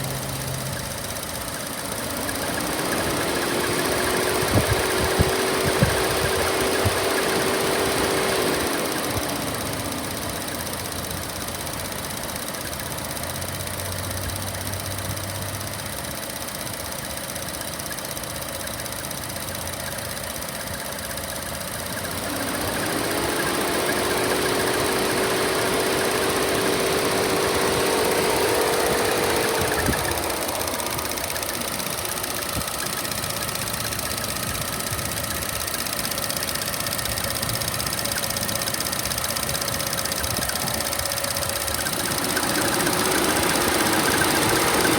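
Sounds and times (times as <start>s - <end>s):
car engine running: 0.0s - 44.9s
pitched whine: 22.1s - 44.9s.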